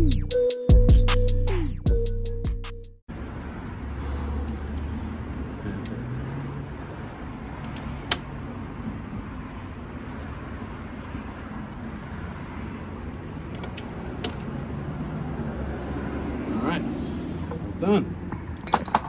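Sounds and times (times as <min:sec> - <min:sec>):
distant road traffic rumble: 0:03.1 - 0:19.0
sharp metallic click: 0:07.7 - 0:08.3.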